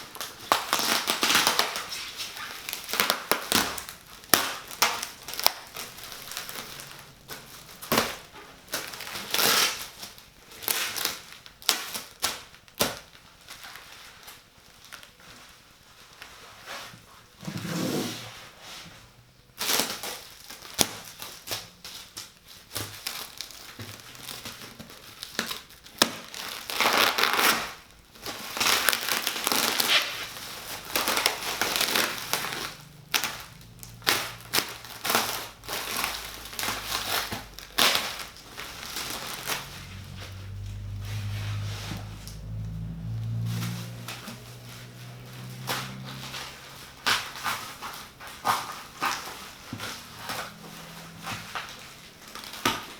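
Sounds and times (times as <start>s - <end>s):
cardboard and packing rustling: 0.0s - 52.9s.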